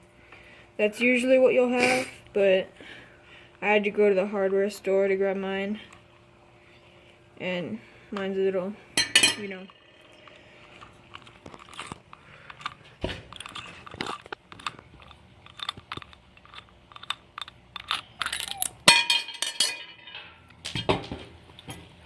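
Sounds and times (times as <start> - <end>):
metal tools clicking and clinking: 9.0 - 20.5
metal parts clattering: 11.1 - 20.4.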